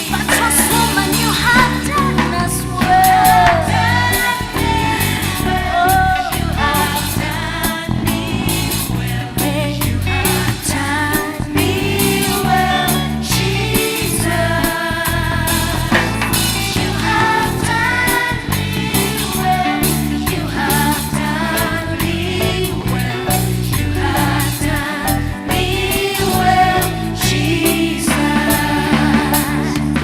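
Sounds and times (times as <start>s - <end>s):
person singing: 0.0s - 14.8s
gospel band with guitar and drums: 0.0s - 30.0s.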